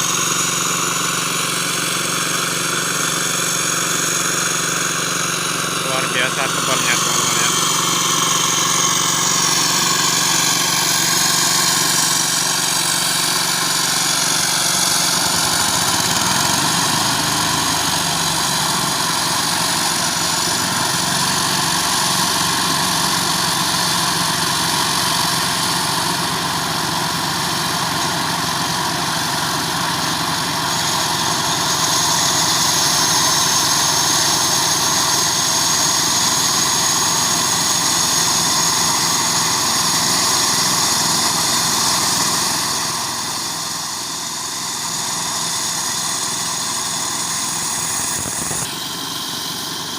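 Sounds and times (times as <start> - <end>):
excavator diesel engine running: 0.0 - 49.9
high whine: 5.8 - 10.6, 47.2 - 49.9.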